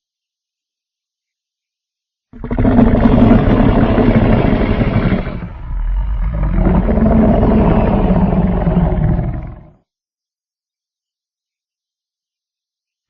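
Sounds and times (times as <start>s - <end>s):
deep dinosaur roar: 2.4s - 9.8s.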